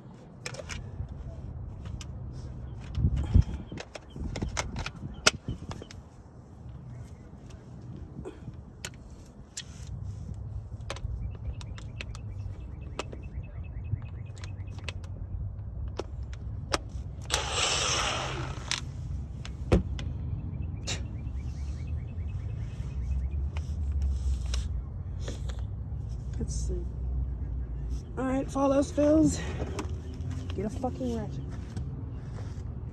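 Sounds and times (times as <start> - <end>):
impact wrench burst: 17.3 - 18.8.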